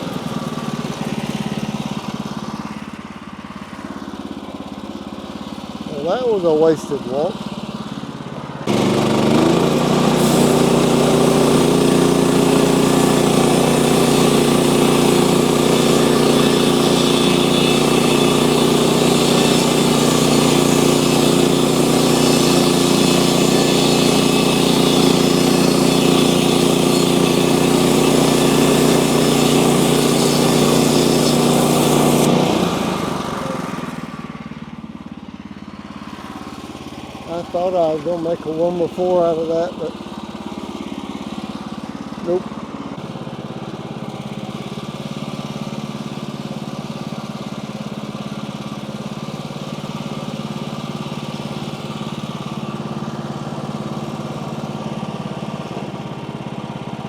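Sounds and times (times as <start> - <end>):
sawmill engine drone: 0.0 - 57.0
blade hissing through log: 8.7 - 34.5.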